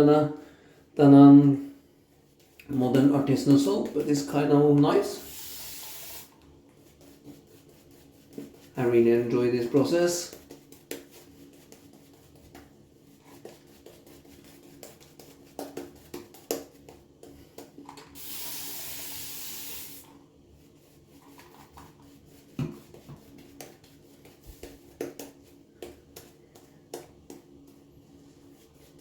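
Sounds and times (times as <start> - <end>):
steady hiss: 5.0 - 6.4, 18.1 - 20.1
bristle scratching: 5.0 - 17.0, 18.2 - 25.6, 27.3 - 29.0.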